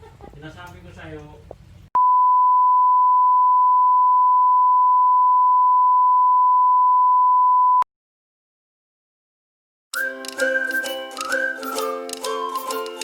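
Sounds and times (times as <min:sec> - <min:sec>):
electronic beep tone: 0:02.0 - 0:07.8.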